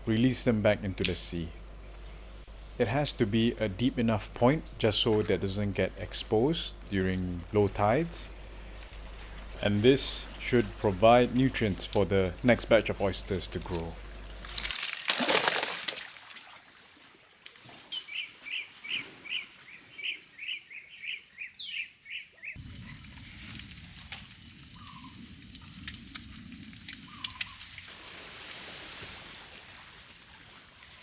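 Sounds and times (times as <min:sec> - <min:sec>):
low outdoor rumble: 0:00.0 - 0:14.7
bird chirping: 0:17.9 - 0:23.0.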